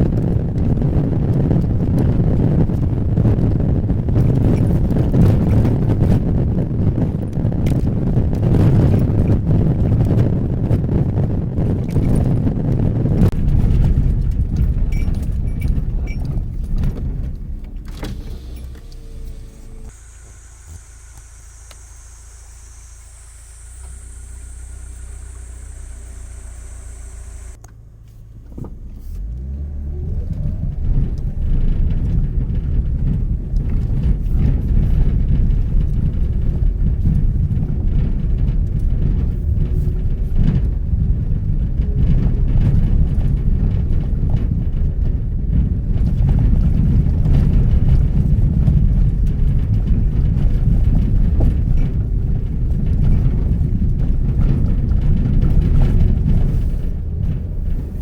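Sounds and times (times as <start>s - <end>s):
vehicle engine rumbling: 0.0s - 58.0s.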